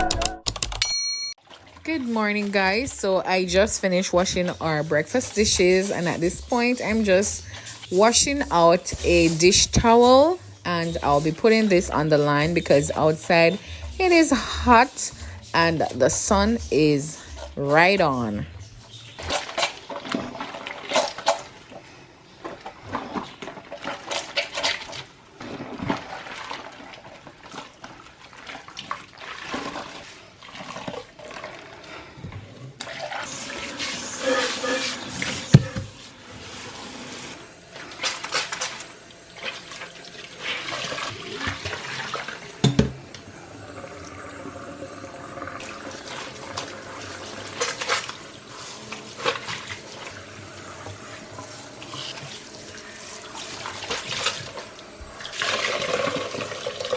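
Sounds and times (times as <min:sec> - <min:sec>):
tap water splashing in sink: 0:40.5 - 0:43.3.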